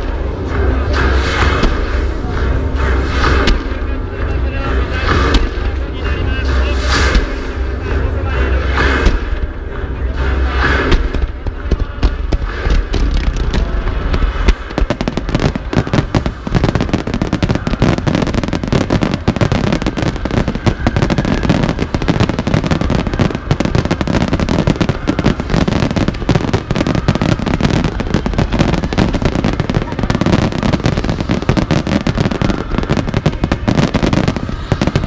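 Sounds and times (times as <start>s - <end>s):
heavy low firework booms: 10.7s - 35.0s
crackle of rapid firework bangs: 10.8s - 35.0s.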